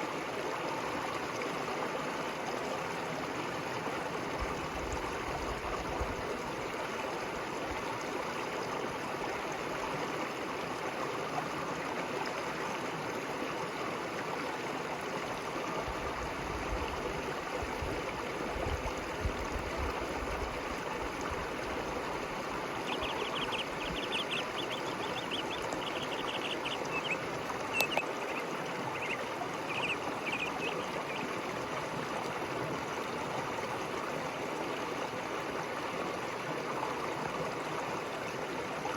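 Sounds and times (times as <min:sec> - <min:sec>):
river water rushing: 0:20.6 - 0:37.2
short high chirps: 0:22.9 - 0:28.4.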